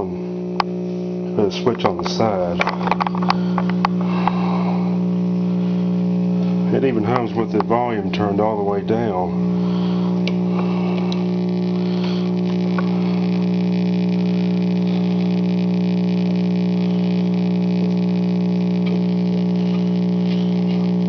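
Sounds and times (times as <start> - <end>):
clock radio humming loudly: 0.0 - 21.0.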